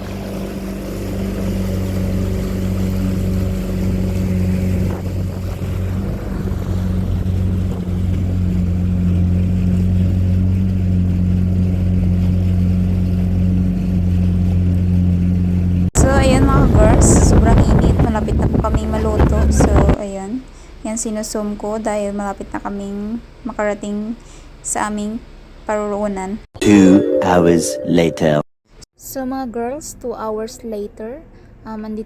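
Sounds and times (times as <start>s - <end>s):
engine humming: 0.0s - 20.0s.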